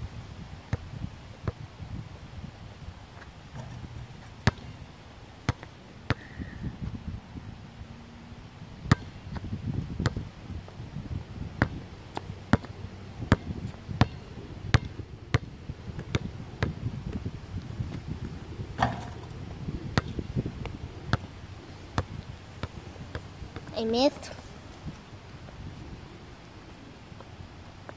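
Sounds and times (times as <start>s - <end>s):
basketball bouncing: 3.5s - 4.7s, 14.0s - 15.5s, 18.8s - 19.3s.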